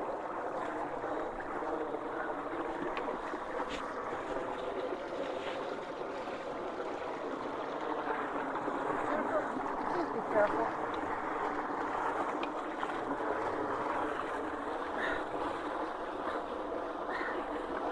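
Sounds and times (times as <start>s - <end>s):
water rushing into drain: 0.0s - 17.9s.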